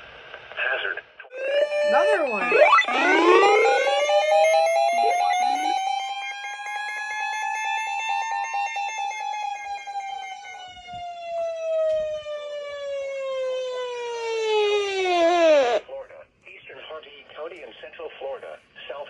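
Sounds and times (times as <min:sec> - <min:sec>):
siren winding down: 0:01.3 - 0:15.8.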